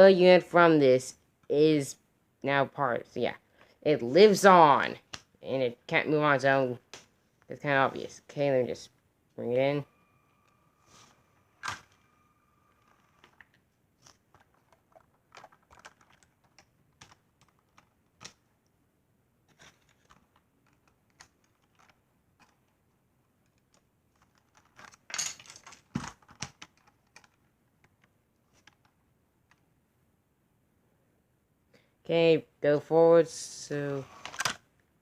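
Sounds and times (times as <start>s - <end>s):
plastic bricks clicking: 12.8s - 18.5s.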